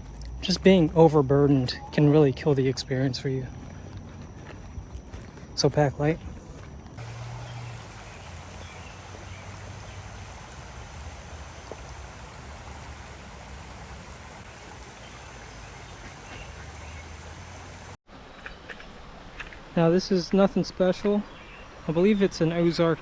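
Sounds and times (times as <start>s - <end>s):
creek water running: 6.8s - 18.0s
faint hiss: 7.0s - 18.0s.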